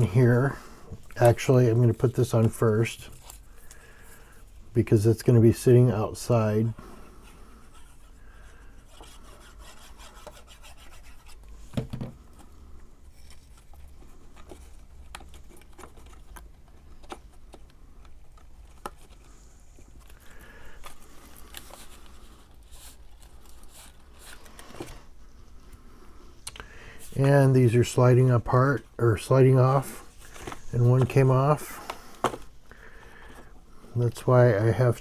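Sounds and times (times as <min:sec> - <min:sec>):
paper rubbing and rustling: 0:08.8 - 0:11.7, 0:13.0 - 0:25.5, 0:27.1 - 0:32.5.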